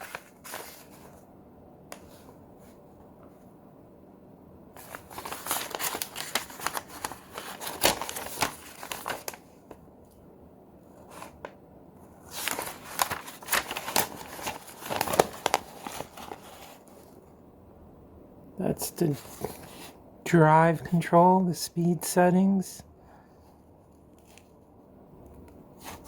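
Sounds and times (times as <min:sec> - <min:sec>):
packaging crinkling and rustling: 0:00.0 - 0:01.2, 0:04.8 - 0:09.8, 0:12.2 - 0:17.2, 0:19.1 - 0:20.0, 0:24.1 - 0:24.6.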